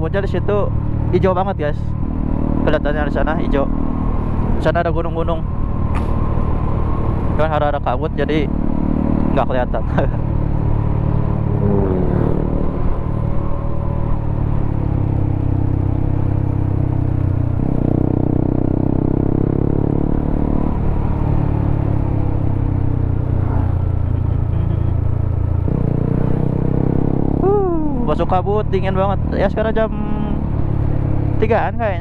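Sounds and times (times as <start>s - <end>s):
motorcycle engine running: 0.0s - 32.0s.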